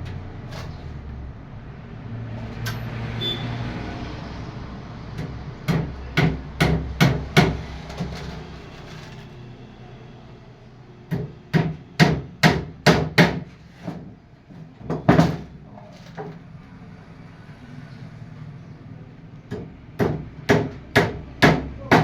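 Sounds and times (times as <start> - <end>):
hammer striking wood: 5.2 - 8.2, 11.1 - 14.1, 14.9 - 15.6, 19.5 - 22.0.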